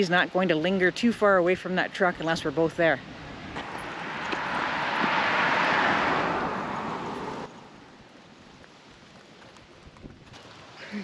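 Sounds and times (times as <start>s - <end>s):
quiet outdoor background: 0.0s - 11.0s
vehicle passing by: 3.2s - 8.0s.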